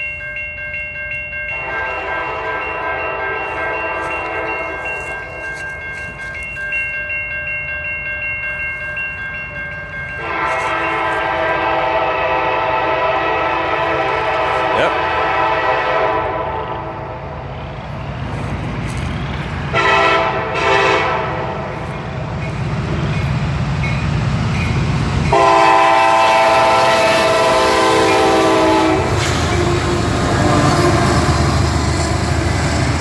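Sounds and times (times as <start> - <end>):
freight train rumble: 0.0 - 33.0
locomotive horn blasts: 1.5 - 5.0, 10.2 - 17.2, 19.4 - 21.8, 25.3 - 31.7.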